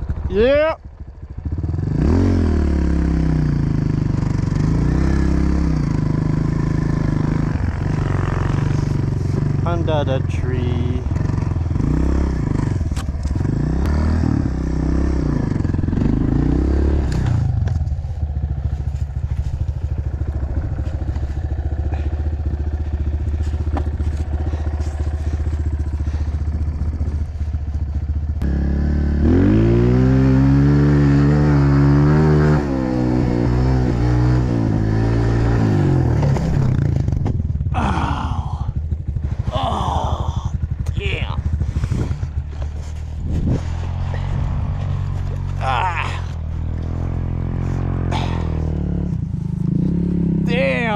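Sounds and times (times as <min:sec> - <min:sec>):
motorbike engine revving: 0:00.0 - 0:50.9.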